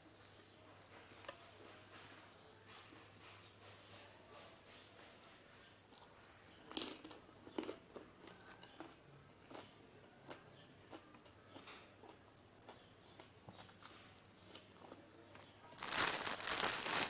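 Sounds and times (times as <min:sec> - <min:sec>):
person chewing and crunching food: 0:06.0 - 0:17.0.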